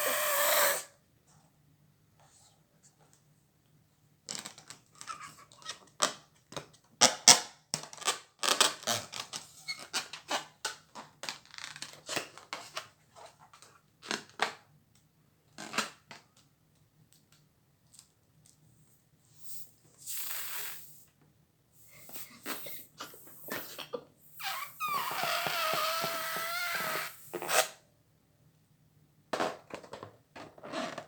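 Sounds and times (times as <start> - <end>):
balloons popping: 24.4 - 27.7.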